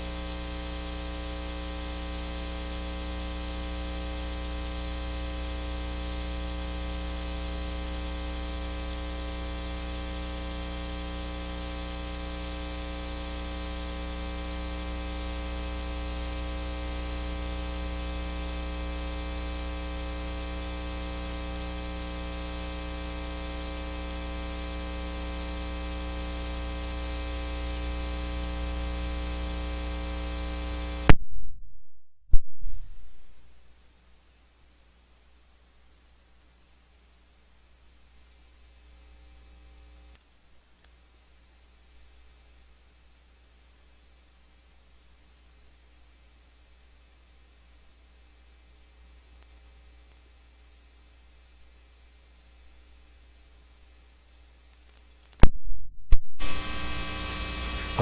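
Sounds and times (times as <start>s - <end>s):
electrical buzz and mains hum: 0.0s - 31.2s, 32.7s - 55.5s, 56.4s - 58.0s
loud electrical pop: 56.4s - 58.0s.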